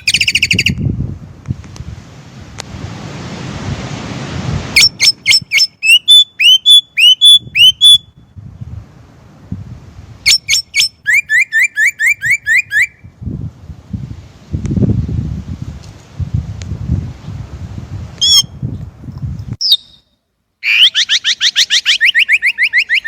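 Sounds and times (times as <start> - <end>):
blackbird calling sharp notes: 0.0 - 0.8, 4.8 - 8.2, 10.3 - 13.1, 18.2 - 18.6, 19.6 - 23.0.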